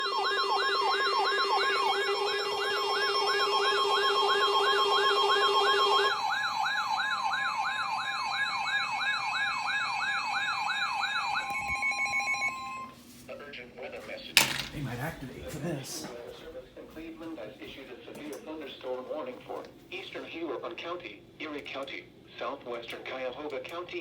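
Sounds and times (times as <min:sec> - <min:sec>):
siren yelping: 0:00.0 - 0:13.0.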